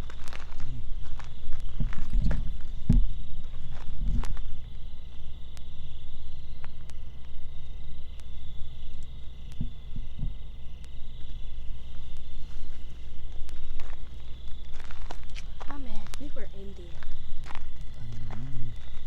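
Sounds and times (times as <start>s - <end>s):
high-pitched insect drone: 0.0s - 19.0s
low rumble: 0.0s - 19.0s
soft thuds: 9.5s - 10.4s.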